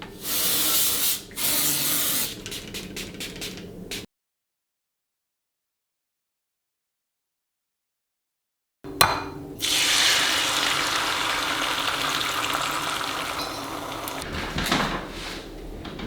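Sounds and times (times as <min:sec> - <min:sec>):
tap water running into sink: 0:09.6 - 0:14.3.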